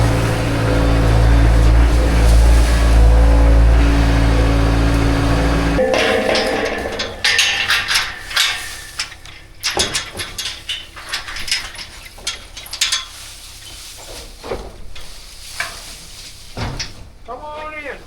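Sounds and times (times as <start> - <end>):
irregular clanks and knocks: 0.0 - 15.9.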